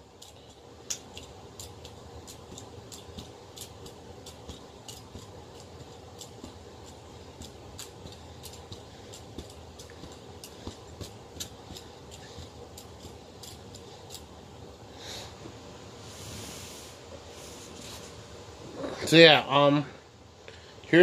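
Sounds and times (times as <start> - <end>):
small hard objects clicking: 0.0 - 14.3.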